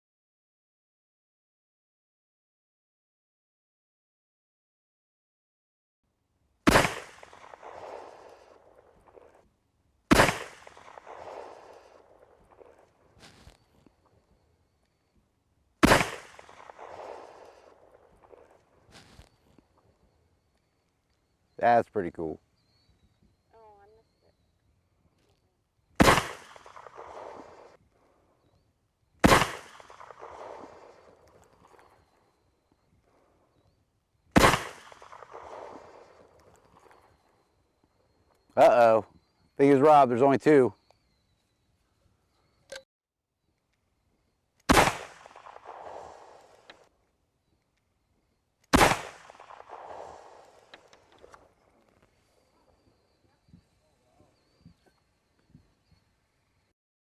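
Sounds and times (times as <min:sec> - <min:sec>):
flare pistol shots: 0:06.7 - 0:09.4, 0:10.1 - 0:13.6, 0:15.8 - 0:19.3, 0:26.0 - 0:27.8, 0:29.2 - 0:32.2, 0:34.3 - 0:37.3, 0:44.7 - 0:46.9, 0:48.7 - 0:52.4.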